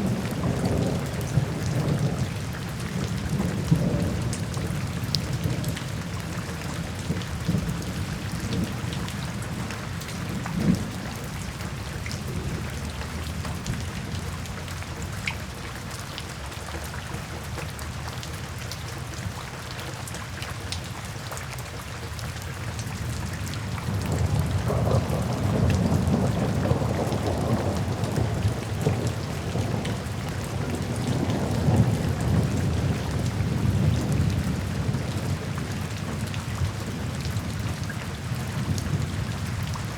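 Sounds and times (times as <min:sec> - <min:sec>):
rain falling: 0:00.0 - 0:39.9.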